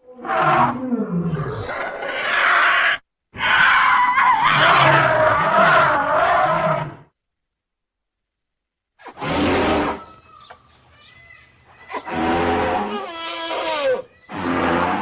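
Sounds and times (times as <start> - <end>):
harsh elephant calls: 9.0 - 10.4, 11.8 - 15.0.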